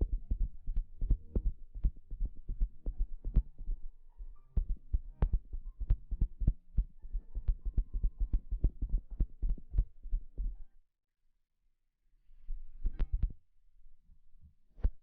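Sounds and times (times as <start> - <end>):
soft low thumps: 0.0 - 10.7.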